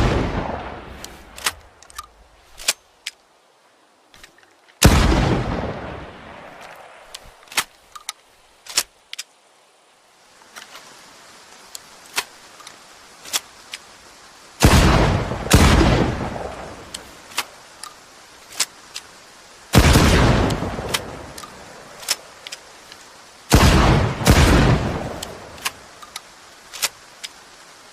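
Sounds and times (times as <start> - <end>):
loud shotgun blasts with echo: 0.0 - 0.8, 4.8 - 6.1, 14.6 - 16.6, 19.8 - 21.1, 23.5 - 25.3.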